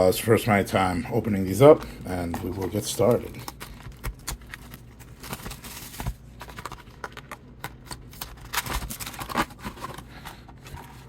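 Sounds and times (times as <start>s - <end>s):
cardboard and wrappers crinkling: 1.6s - 11.0s
rustling of cards: 1.6s - 11.0s.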